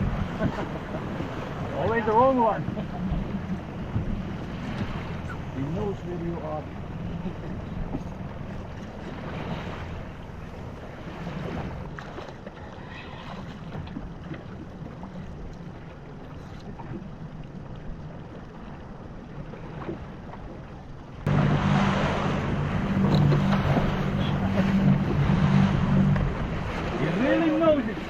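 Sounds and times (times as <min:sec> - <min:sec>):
boat engine running: 0:00.0 - 0:28.0
water noise: 0:00.0 - 0:28.0
wind: 0:00.0 - 0:28.0.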